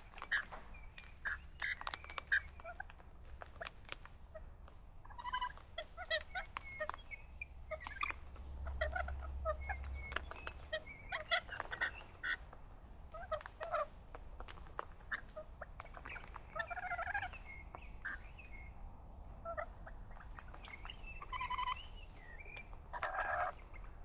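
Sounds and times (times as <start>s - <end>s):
parrots calling and chattering: 0.0s - 12.5s
low rumble: 8.2s - 11.3s.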